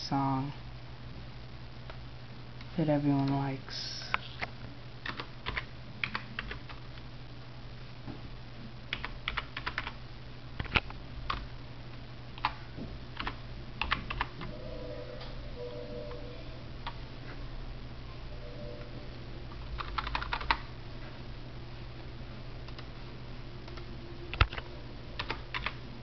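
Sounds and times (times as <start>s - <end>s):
steady low hum: 0.0s - 26.0s
keyboard typing: 5.0s - 6.8s, 8.9s - 10.0s, 13.2s - 14.6s, 19.5s - 20.7s, 23.6s - 25.8s.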